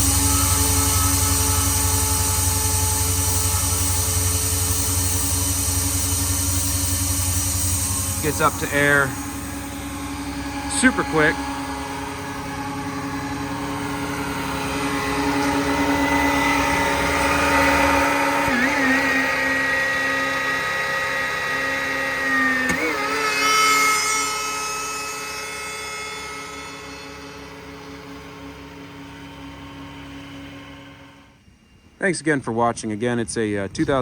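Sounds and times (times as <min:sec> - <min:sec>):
air compressor whining: 0:00.0 - 0:34.0.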